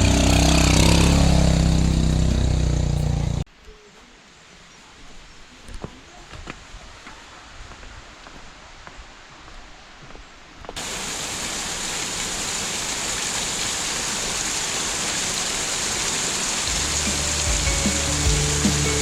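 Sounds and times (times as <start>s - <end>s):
waterfall roaring: 10.8s - 19.0s
song bass line and beat: 16.7s - 19.0s.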